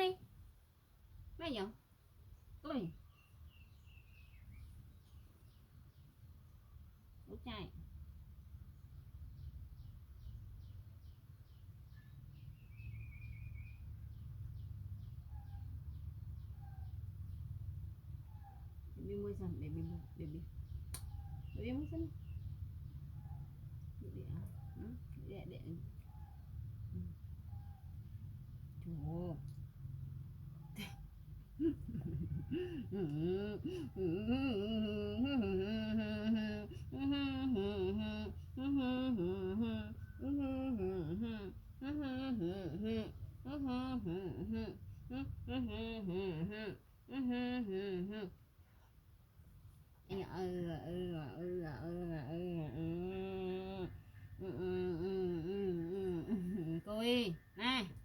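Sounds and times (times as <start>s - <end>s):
low background rumble: 0.0s - 58.0s
small bird chirping: 1.0s - 46.7s
person humming a slow tune: 31.6s - 48.4s, 50.1s - 57.4s.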